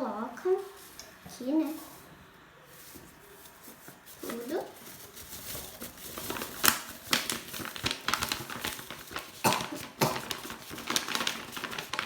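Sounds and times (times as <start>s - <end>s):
plastic packet crinkling: 0.4s - 12.0s.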